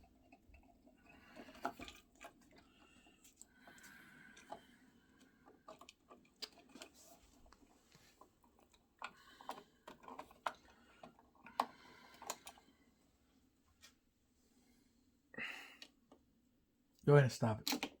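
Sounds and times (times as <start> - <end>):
clicks taps and scrapes: 0.0 - 12.6.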